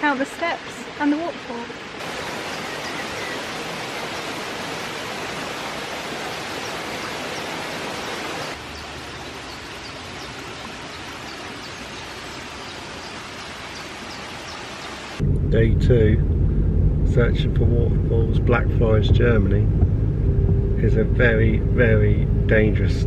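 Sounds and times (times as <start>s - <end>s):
waterfall rushing: 0.0s - 15.2s.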